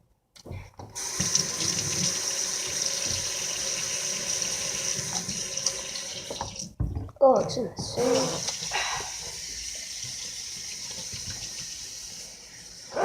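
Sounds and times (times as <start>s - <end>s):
tap water running into sink: 0.8s - 6.8s, 8.2s - 12.9s.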